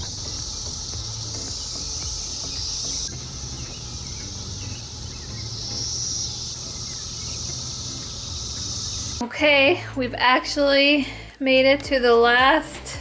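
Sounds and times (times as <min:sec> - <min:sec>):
cicadas droning: 0:00.0 - 0:09.2.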